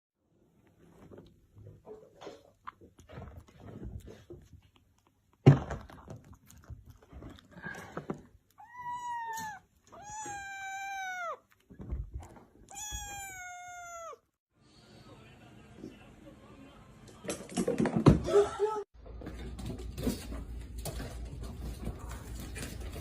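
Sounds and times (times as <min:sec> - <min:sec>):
cat meowing: 0:08.5 - 0:11.6, 0:12.6 - 0:14.3.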